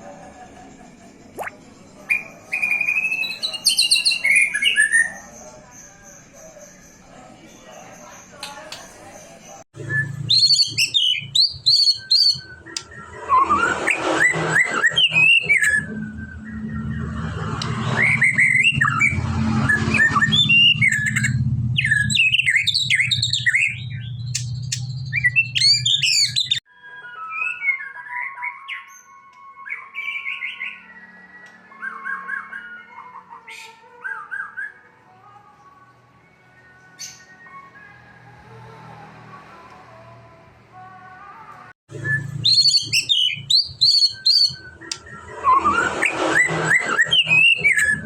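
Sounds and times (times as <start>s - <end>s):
bird singing whistles: 2.1s - 5.2s, 9.8s - 33.4s, 41.9s - 48.0s
bird twittering: 9.9s - 13.7s, 42.1s - 48.0s.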